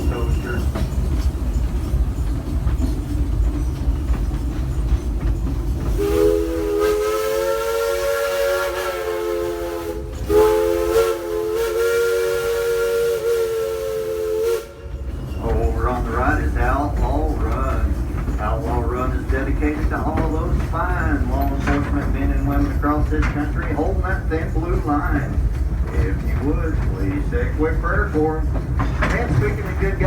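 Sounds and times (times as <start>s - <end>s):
train rolling rumble: 0.0s - 30.0s
steam locomotive chime whistle: 5.9s - 16.2s.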